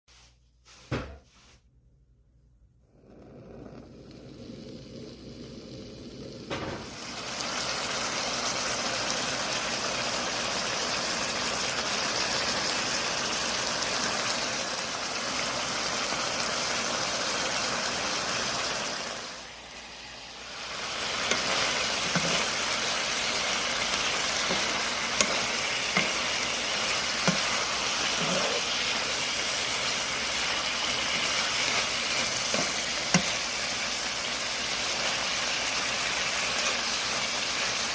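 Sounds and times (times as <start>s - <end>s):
food sizzling in a pan: 3.0s - 37.9s
light stirring taps: 21.1s - 28.6s.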